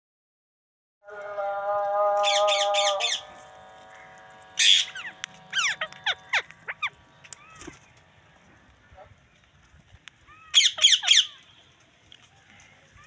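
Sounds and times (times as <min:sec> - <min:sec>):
parakeet screeching and chirping: 0:02.2 - 0:07.8, 0:10.3 - 0:11.4
steady tone with rapid high strokes: 0:02.2 - 0:09.0.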